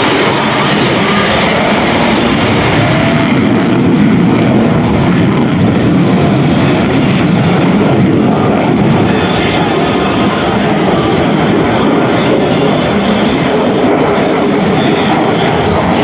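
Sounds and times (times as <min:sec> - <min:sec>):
jet engines: 0:00.0 - 0:16.0
rock music over loudspeakers: 0:00.0 - 0:16.0.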